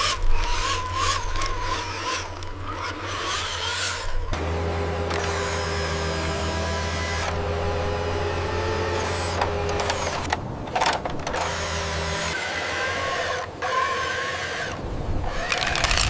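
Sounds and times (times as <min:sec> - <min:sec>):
steady low hum: 0:00.0 - 0:15.4
small electric motors whirring: 0:00.0 - 0:16.0
mechanical clicking and clatter: 0:15.3 - 0:16.0.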